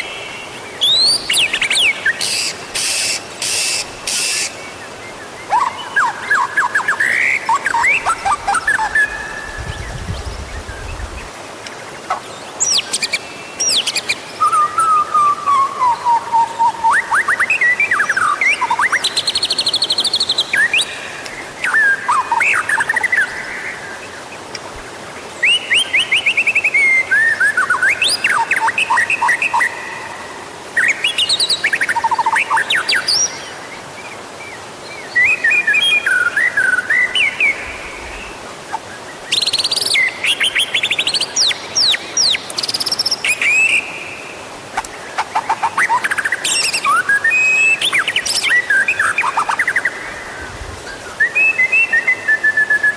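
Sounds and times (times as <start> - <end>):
songbird singing whistled phrases: 0.8 - 4.5, 51.2 - 52.9.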